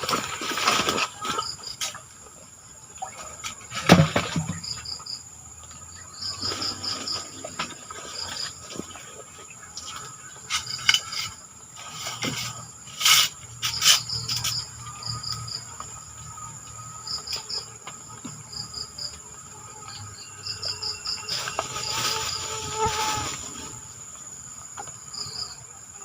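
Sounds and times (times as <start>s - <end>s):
insects chirping and buzzing: 0.0s - 26.0s
sharp knocks or rustles: 3.4s - 5.0s.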